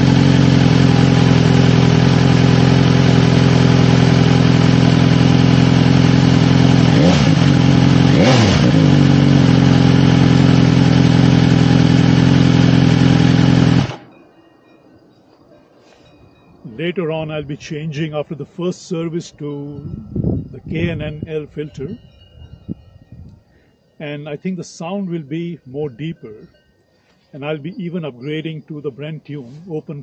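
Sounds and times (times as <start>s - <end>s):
motorcycle engine idling and revving: 0.0s - 14.3s, 19.7s - 22.8s.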